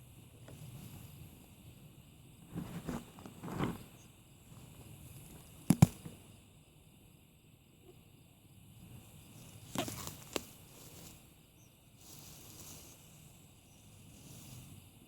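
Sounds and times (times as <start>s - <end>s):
scraping rustle: 2.5s - 4.0s, 12.0s - 14.8s.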